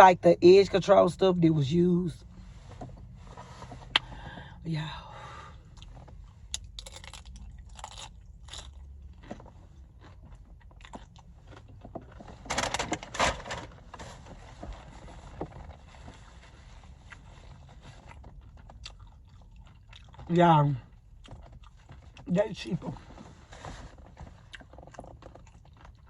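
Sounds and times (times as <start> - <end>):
person chewing crunchy food: 5.7 - 11.9, 17.0 - 20.3, 21.0 - 22.3, 24.4 - 26.0.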